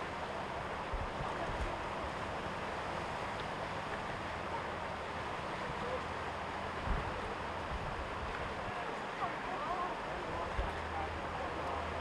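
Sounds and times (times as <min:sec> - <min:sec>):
wind rumble on microphone: 0:00.0 - 0:04.6, 0:06.7 - 0:08.8
creek rushing through rapids: 0:00.0 - 0:12.0.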